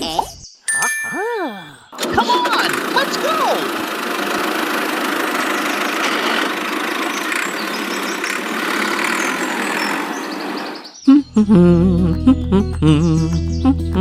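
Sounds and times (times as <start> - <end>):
tractor engine running: 2.0 - 10.6.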